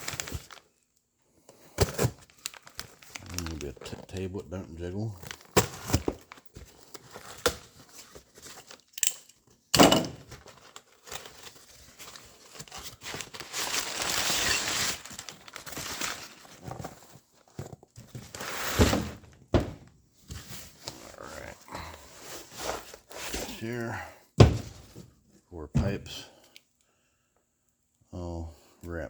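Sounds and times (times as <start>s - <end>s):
packaging crinkling and tearing: 0.0s - 0.8s, 1.5s - 9.0s, 10.2s - 19.4s
objects thunking down: 9.8s - 10.5s, 24.4s - 25.1s.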